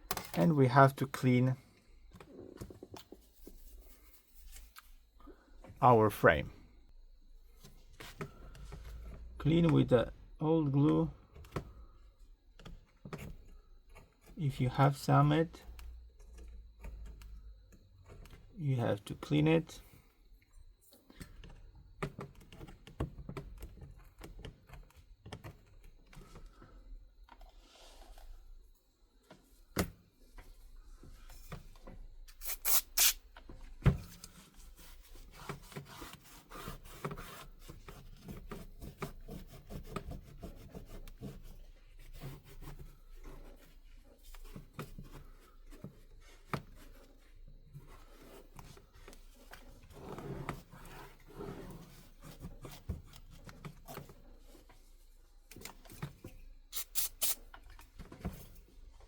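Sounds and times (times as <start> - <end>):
adhesive being scraped: 32.3 - 33.2.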